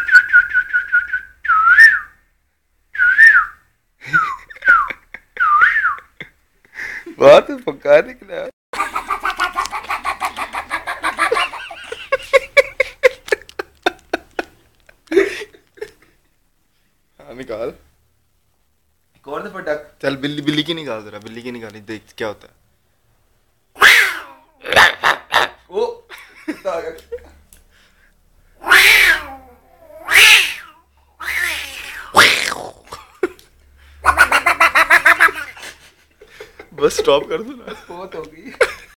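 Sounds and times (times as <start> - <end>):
cat meowing: 23.8 - 24.5, 28.6 - 32.3
person making repeated short sounds: 31.6 - 33.0.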